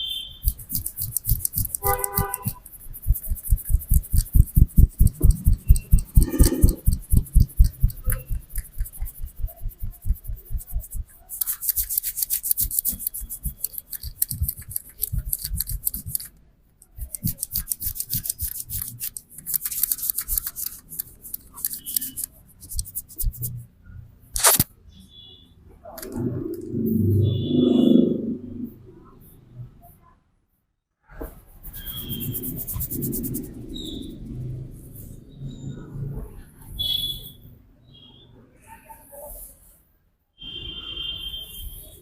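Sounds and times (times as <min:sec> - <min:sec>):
hands rubbing head: 0:00.4 - 0:16.3, 0:16.9 - 0:23.6, 0:31.6 - 0:33.6
hands tapping on head: 0:00.5 - 0:16.2.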